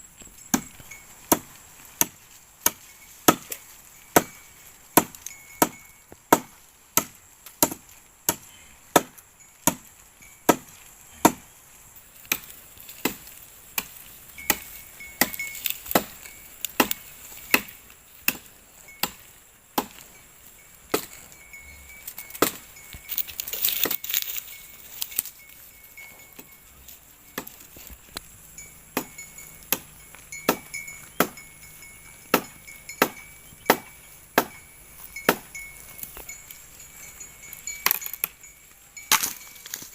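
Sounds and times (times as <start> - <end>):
repeated chopping: 5.0 - 9.9, 10.5 - 11.5, 12.3 - 20.0, 28.9 - 31.4, 32.3 - 35.5
scraping or rustling: 21.1 - 28.2.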